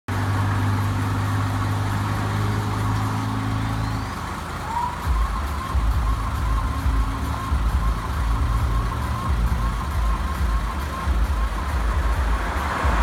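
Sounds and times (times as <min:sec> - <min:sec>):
vehicle engine running: 0:00.1 - 0:13.0.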